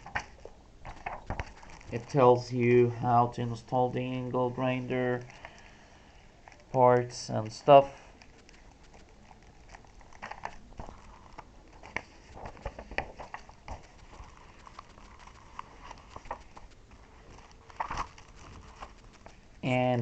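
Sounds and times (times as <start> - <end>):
paper rustling: 0.0 - 2.6, 6.5 - 19.6.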